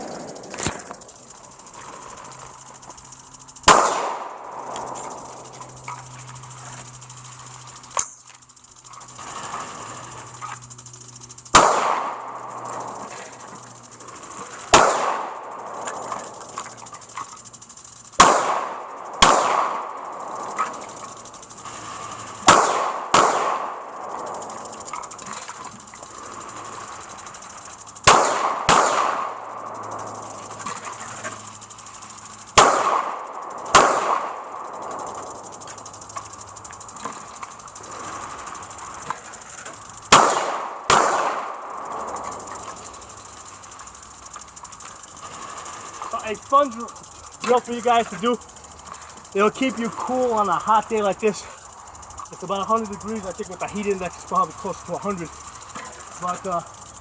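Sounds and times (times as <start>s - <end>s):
rifle shots echoing: 3.7s - 5.3s, 11.6s - 12.4s, 14.7s - 16.0s, 18.2s - 20.4s, 22.5s - 24.1s, 28.0s - 29.4s, 32.6s - 34.6s, 40.1s - 42.2s.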